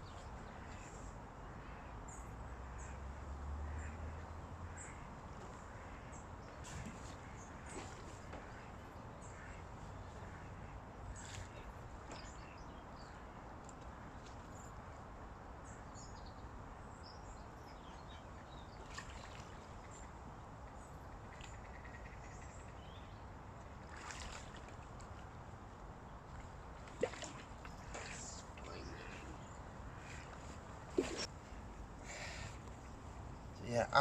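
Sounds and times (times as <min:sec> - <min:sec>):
faint outdoor background noise: 0:00.0 - 0:34.0.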